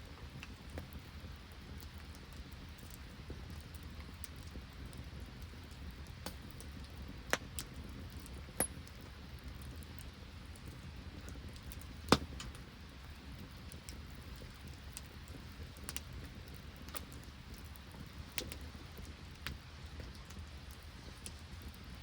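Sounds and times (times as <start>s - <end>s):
campfire crackling and popping: 0.0s - 22.0s.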